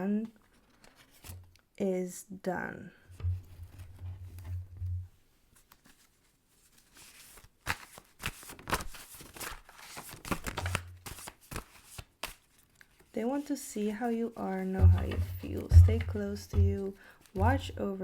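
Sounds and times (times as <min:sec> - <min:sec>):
cards rustling and shuffling: 0:00.4 - 0:01.3, 0:05.6 - 0:13.1.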